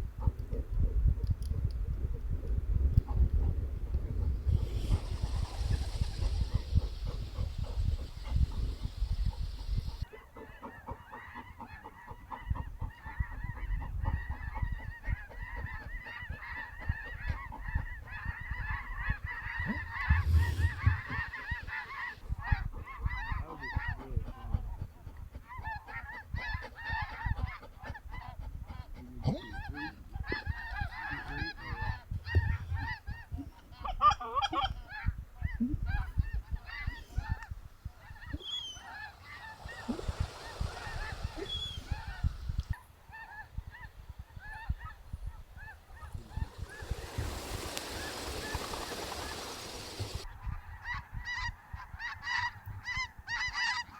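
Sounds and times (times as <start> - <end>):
flock of geese honking: 4.6 - 24.2, 38.1 - 45.0, 45.6 - 53.9.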